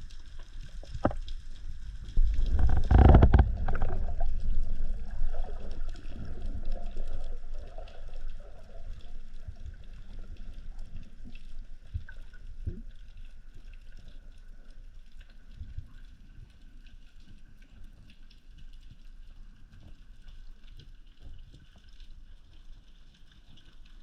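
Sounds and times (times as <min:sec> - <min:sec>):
underwater rush and bubbling: 0:00.0 - 0:16.3
small ticks underwater: 0:00.0 - 0:24.0
water gurgling and rustling: 0:00.0 - 0:24.0.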